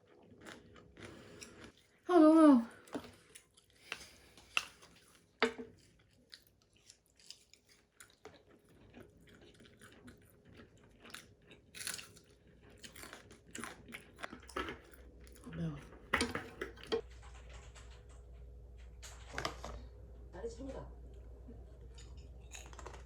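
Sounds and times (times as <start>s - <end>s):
person chewing crunchy food: 0.0s - 2.1s, 2.8s - 17.0s, 21.7s - 23.0s.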